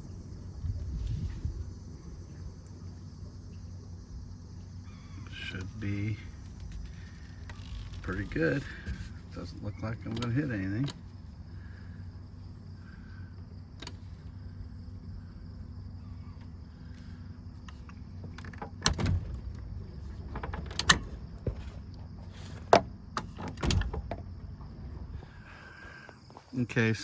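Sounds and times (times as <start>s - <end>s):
boat engine rumble: 0.0s - 27.0s
boat knocking against dock: 18.1s - 25.3s.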